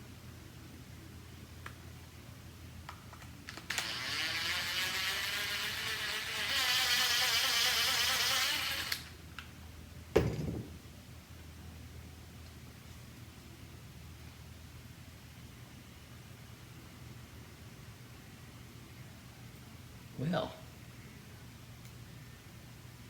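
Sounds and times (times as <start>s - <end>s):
cordless screwdriver motor: 3.5s - 9.1s
knock: 10.2s - 10.8s.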